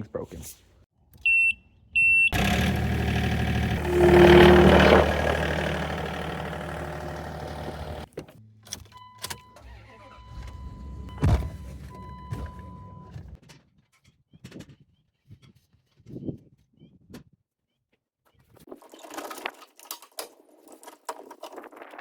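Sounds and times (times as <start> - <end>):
vehicle engine revving: 2.4 - 8.1.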